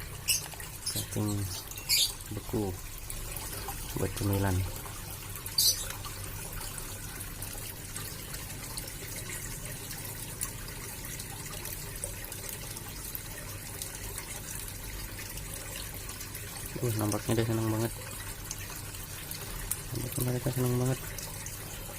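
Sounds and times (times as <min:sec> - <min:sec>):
water trickling into pond: 0:00.0 - 0:21.9.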